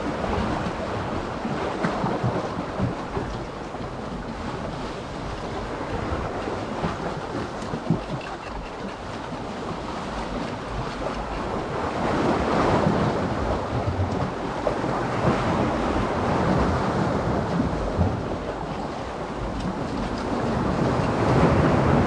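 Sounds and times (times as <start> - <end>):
sea waves washing in: 0.0 - 22.0
wind buffeting the microphone: 0.0 - 22.0.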